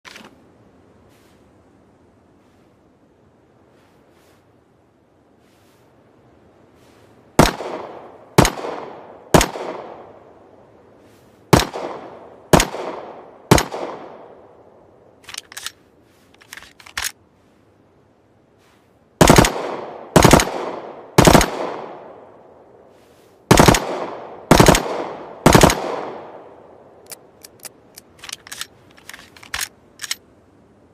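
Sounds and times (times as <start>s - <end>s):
pistol shots echoing: 7.4s - 10.1s, 11.5s - 14.4s, 19.2s - 22.1s, 23.5s - 26.5s
sharp clicks: 27.0s - 30.2s.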